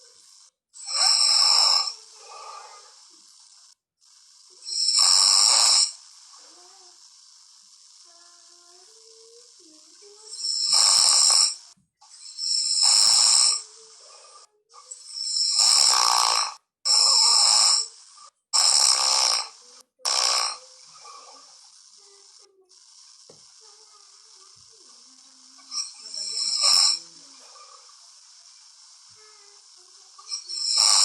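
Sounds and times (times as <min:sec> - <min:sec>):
man snoring: 0:00.0 - 0:06.2, 0:10.3 - 0:23.4, 0:24.0 - 0:27.8, 0:29.6 - 0:31.0.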